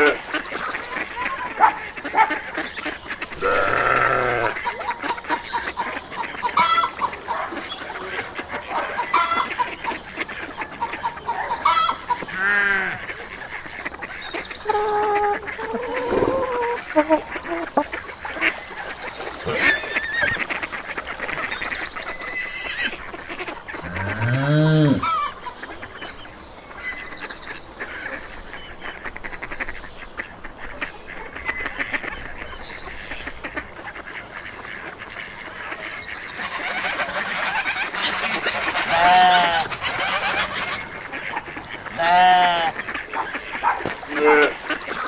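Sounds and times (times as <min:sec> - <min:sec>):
short bird-like animal calls: 0:03.2 - 0:04.6
long low animal call: 0:03.3 - 0:04.6, 0:14.6 - 0:17.8, 0:23.8 - 0:25.3.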